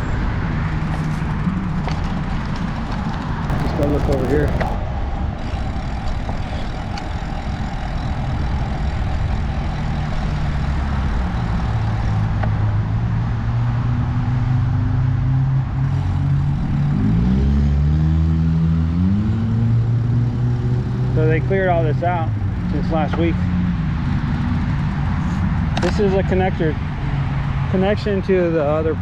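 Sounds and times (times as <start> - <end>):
vehicle engine accelerating: 3.5 - 4.8.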